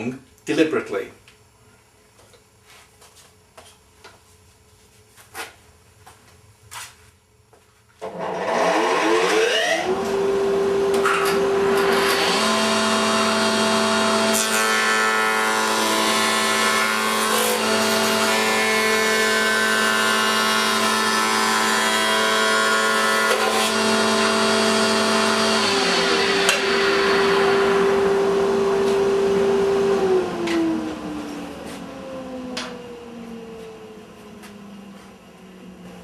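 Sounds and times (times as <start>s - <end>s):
planer motor humming: 8.0s - 36.0s.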